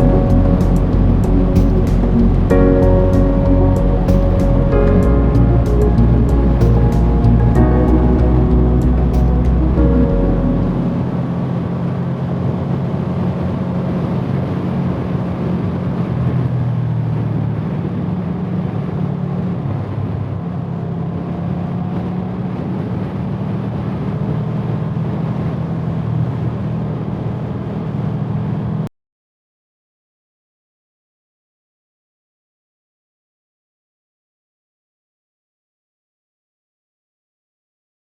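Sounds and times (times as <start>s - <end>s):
wind and road noise: 0.0s - 28.9s.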